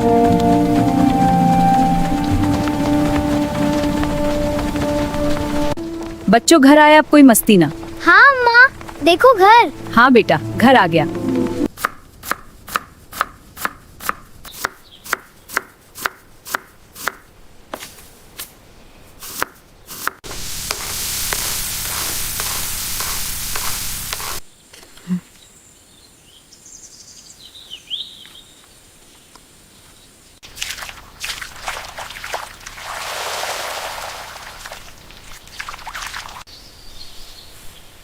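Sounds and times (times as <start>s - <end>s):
steady hiss: 20.3s - 24.5s.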